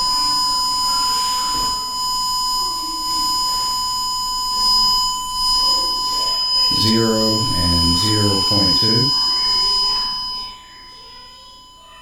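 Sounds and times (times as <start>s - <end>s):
faint high-pitched tone: 0.0s - 12.0s
steady test tone: 6.2s - 10.4s.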